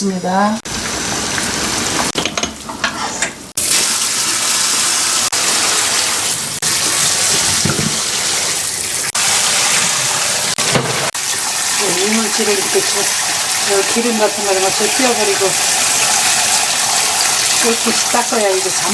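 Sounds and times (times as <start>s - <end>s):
tap water splashing into sink: 5.4s - 9.9s, 10.5s - 14.0s.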